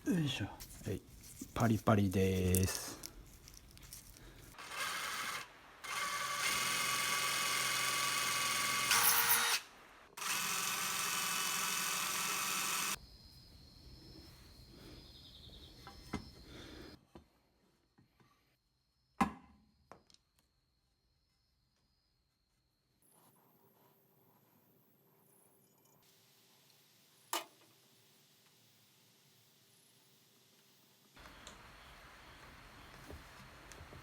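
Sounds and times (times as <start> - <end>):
electric drill whining: 4.0 - 13.0.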